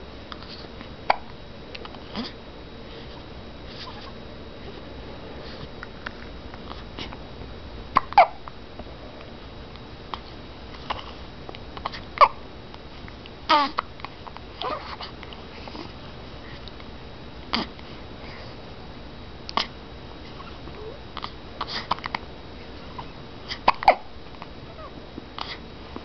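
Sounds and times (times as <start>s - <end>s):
hiccups: 8.0s - 8.4s, 11.9s - 12.4s, 23.5s - 24.1s.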